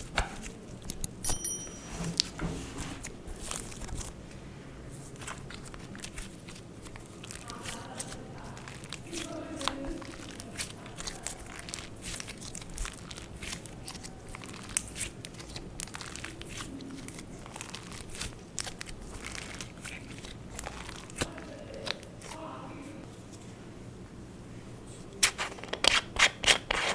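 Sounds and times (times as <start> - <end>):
slime squishing: 4.9 - 23.4.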